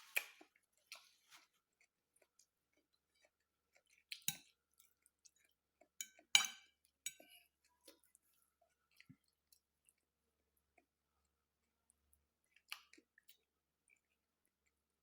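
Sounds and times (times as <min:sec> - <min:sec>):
chewing with crisp crunches: 0:00.0 - 0:15.0.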